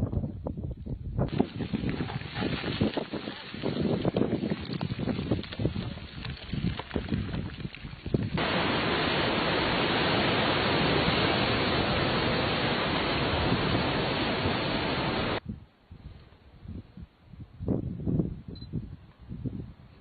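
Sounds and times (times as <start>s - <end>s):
steady rushing noise: 8.4s - 15.4s.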